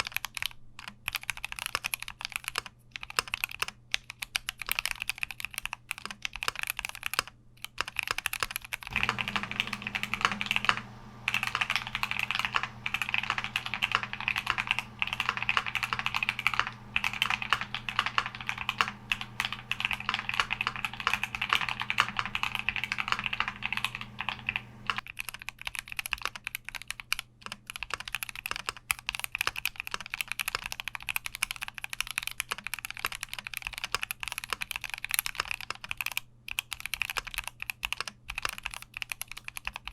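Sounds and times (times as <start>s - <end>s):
mechanical keyboard typing: 0.0s - 39.9s
low steady hum: 8.9s - 25.0s.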